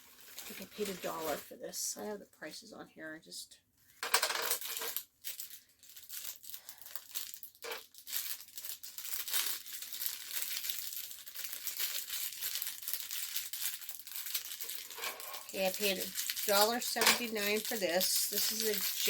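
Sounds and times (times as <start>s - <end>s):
plastic packaging crinkling: 0.0s - 1.5s, 4.6s - 19.0s
plastic tearing: 4.6s - 19.0s.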